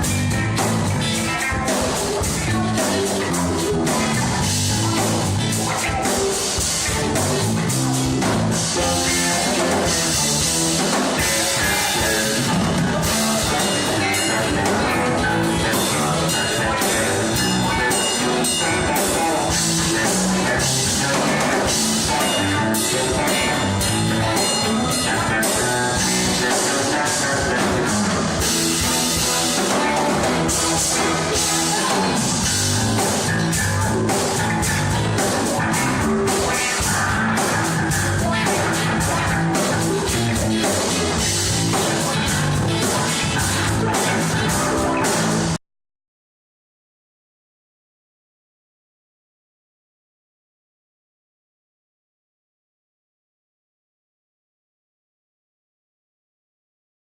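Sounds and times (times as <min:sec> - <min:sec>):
rock music with drums and guitar: 0:00.0 - 0:45.6.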